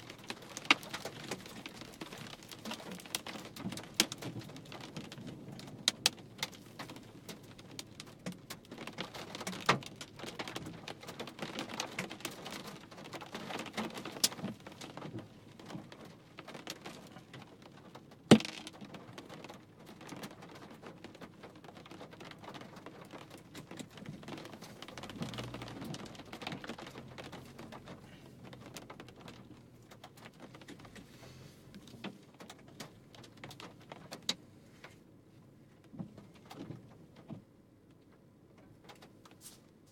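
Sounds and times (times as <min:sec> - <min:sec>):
hailstones striking hard surface: 0:00.0 - 0:30.9
rain patter: 0:00.0 - 0:39.9.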